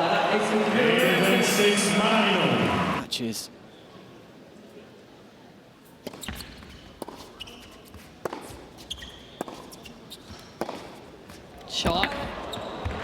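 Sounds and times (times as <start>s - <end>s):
ball bouncing on court: 6.0s - 13.0s
tennis ball hit by racquets: 6.0s - 13.0s.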